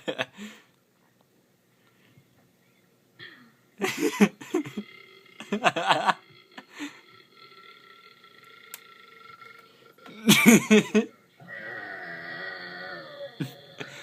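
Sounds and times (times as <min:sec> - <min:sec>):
woman burping loudly: 0:03.2 - 0:14.0.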